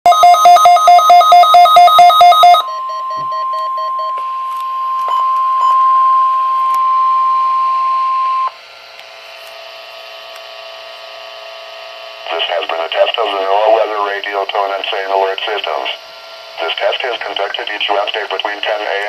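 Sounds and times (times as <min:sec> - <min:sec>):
two-pitch rapid beeping: 0:00.1 - 0:08.5
steady warning alarm tone: 0:00.1 - 0:08.6
faint radio hiss: 0:12.2 - 0:19.0.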